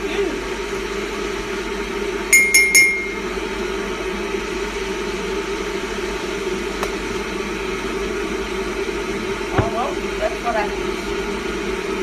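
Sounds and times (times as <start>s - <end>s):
microwave oven beeping: 2.3s - 3.5s.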